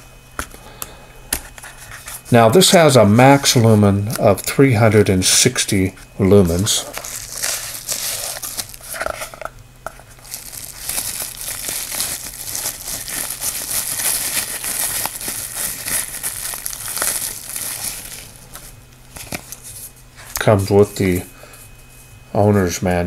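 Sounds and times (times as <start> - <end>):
packaging crinkling and rustling: 6.3 - 19.9.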